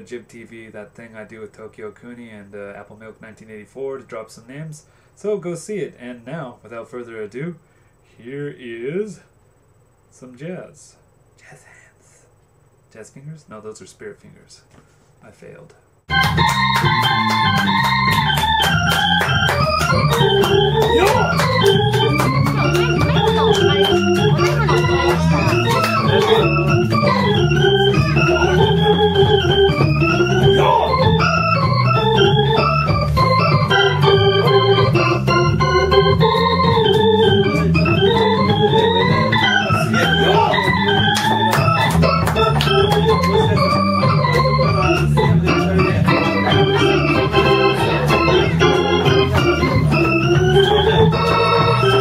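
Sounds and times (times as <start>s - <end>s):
organ-like keyboard melody: 16.0s - 52.0s
low bass notes: 16.1s - 52.0s.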